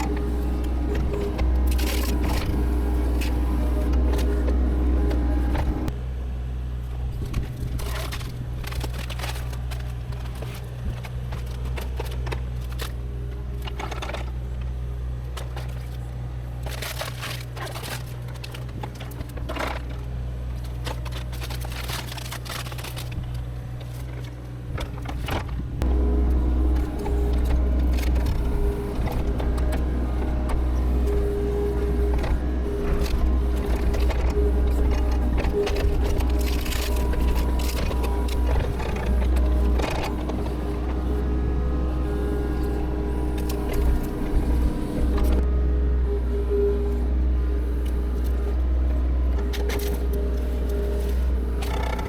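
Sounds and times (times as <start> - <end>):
heavy machine engine running: 0.0 - 52.0
brush and branches cracking: 15.3 - 41.2.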